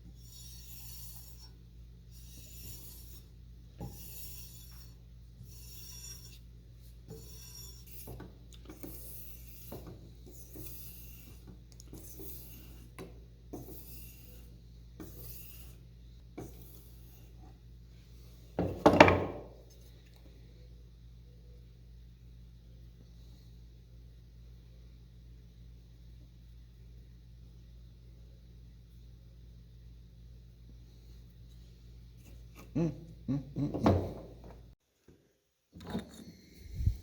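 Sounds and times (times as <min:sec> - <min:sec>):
file rasping back and forth: 0:00.0 - 0:15.8.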